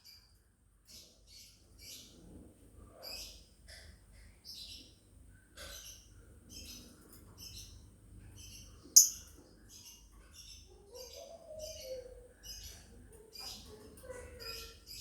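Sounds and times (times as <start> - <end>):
lovebirds chirping: 8.4 - 12.8.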